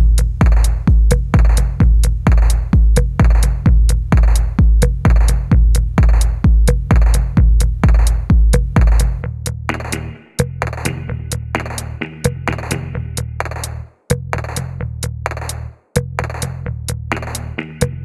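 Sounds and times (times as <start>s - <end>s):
drum machine kick: 0.0s - 18.0s
electronic music: 9.7s - 13.8s, 17.1s - 18.0s.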